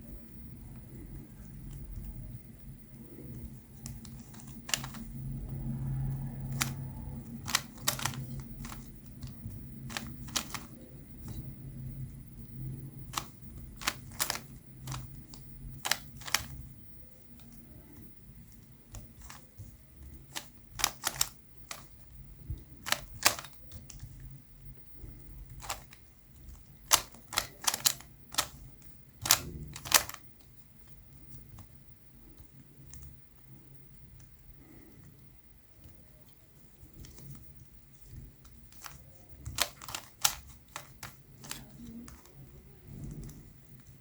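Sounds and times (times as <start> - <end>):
puzzle cube layers clicking: 3.9 - 5.1, 7.5 - 8.9, 9.8 - 11.4, 13.2 - 16.6, 20.3 - 21.9, 22.8 - 23.9, 25.6 - 26.0, 26.8 - 28.6, 29.2 - 30.3, 38.8 - 42.2.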